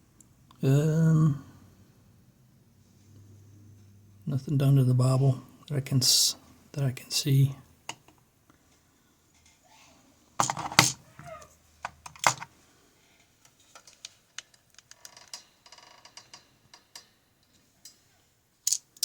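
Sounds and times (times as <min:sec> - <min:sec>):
metal lock parts clattering: 0:10.4 - 0:11.0, 0:12.0 - 0:12.5.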